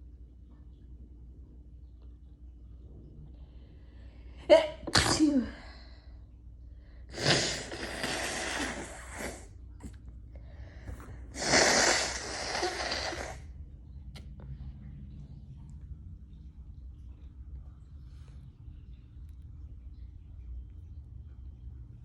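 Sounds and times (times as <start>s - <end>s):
person sneezing: 4.5s - 5.6s.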